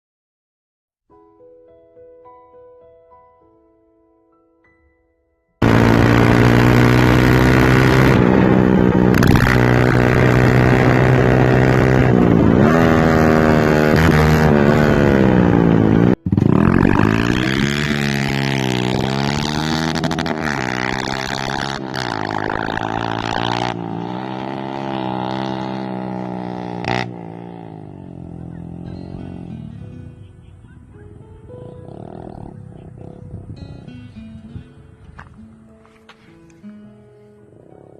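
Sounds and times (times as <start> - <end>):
motorcycle engine revving: 5.6 - 30.5, 31.5 - 33.9.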